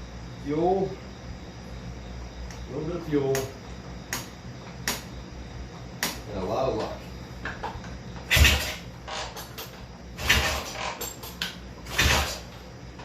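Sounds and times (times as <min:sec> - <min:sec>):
motorcycle kick-starter clunks: 0:07.5 - 0:12.5.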